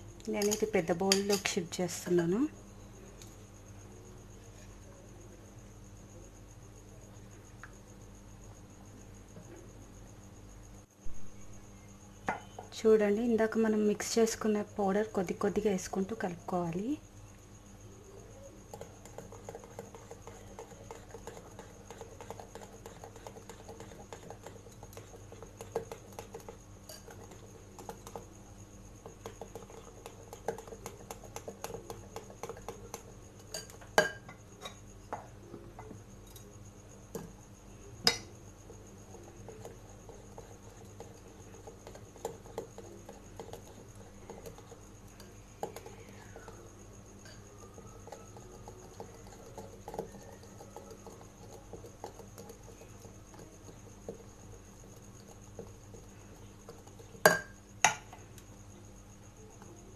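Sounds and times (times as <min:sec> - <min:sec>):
spoon stirring batter in bowl: 0:00.3 - 0:01.6, 0:18.2 - 0:59.9.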